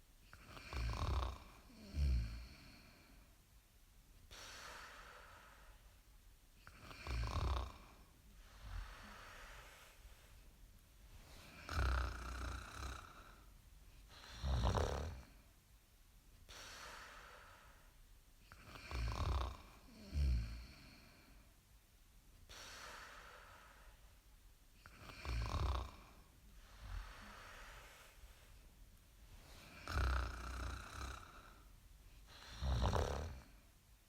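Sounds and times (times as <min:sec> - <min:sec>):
person snoring: 0:00.3 - 0:03.1, 0:06.7 - 0:10.0, 0:11.4 - 0:13.4, 0:14.1 - 0:15.4, 0:18.5 - 0:21.3, 0:24.8 - 0:28.2, 0:29.6 - 0:31.7, 0:32.3 - 0:33.6
airy breaths: 0:08.4 - 0:10.5, 0:26.5 - 0:28.7.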